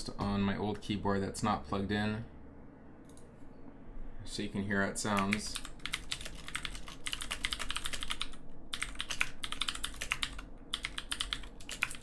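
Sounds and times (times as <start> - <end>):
fast mechanical keyboard typing: 5.1 - 12.0.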